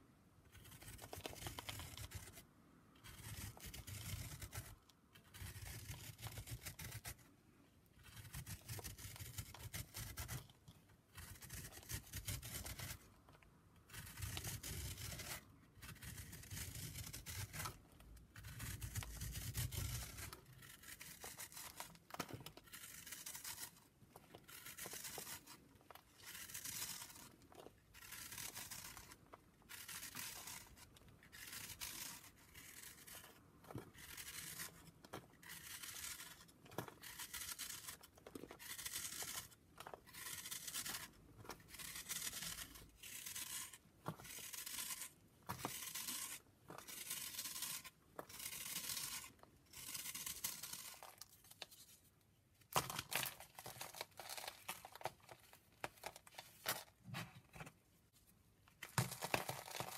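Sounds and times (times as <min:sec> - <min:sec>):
chalk crumbling crunch: 0:18.4 - 0:52.1.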